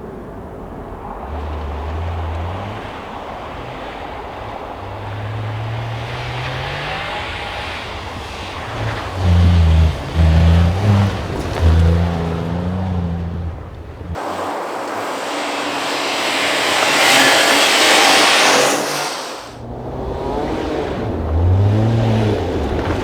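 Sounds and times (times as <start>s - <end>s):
rally car engine revving: 0.0s - 23.0s.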